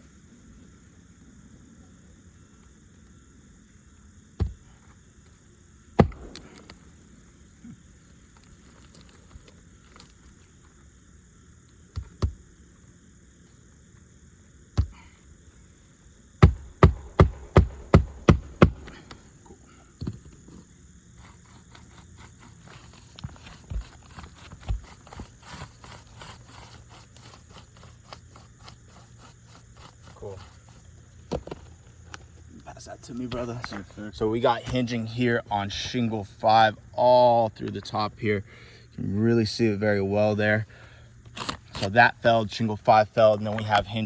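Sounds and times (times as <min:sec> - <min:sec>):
hammer striking nails: 0:06.0 - 0:06.8, 0:16.4 - 0:19.2.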